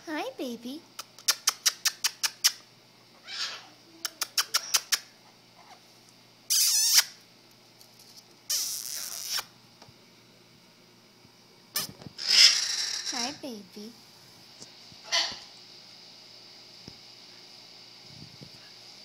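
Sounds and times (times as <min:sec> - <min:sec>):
parrot squawking: 0:03.2 - 0:03.7, 0:06.5 - 0:07.1, 0:11.8 - 0:13.4, 0:15.1 - 0:15.4.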